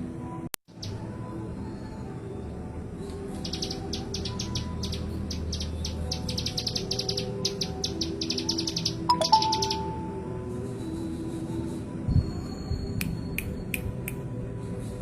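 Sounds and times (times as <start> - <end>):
bird singing high chips: 3.4 - 10.2.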